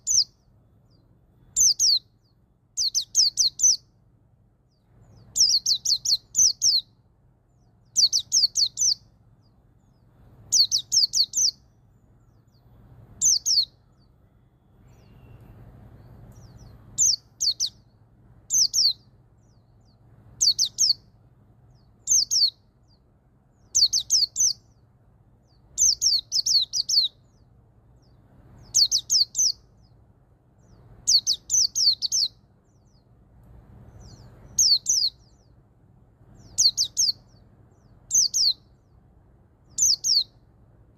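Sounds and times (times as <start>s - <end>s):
bird singing high descending notes: 7.8s - 9.1s, 10.5s - 11.7s, 12.3s - 17.9s, 18.5s - 21.1s, 25.5s - 27.4s, 33.9s - 35.5s, 36.4s - 38.9s.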